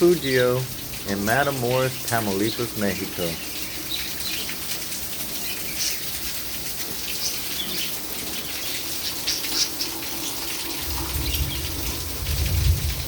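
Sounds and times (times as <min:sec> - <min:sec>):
light rain pattering: 0:00.0 - 0:13.0.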